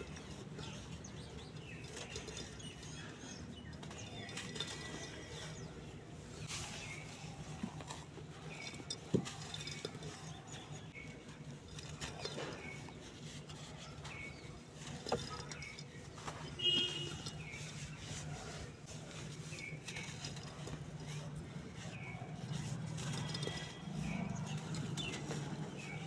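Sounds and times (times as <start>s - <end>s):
bird chirp: 21.7s - 26.0s.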